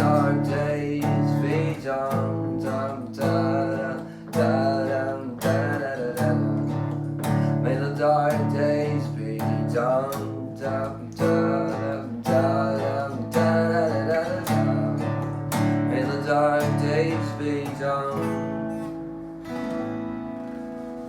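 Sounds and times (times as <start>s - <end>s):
acoustic guitar strumming chords: 0.0s - 21.0s.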